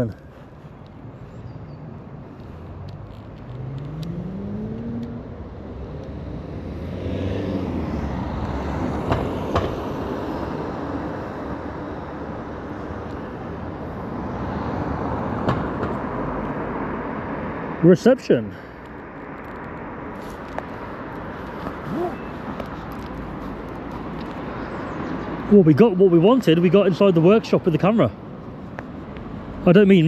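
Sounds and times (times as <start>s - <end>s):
road traffic noise: 0.0s - 30.0s
car engine accelerating: 3.2s - 8.8s.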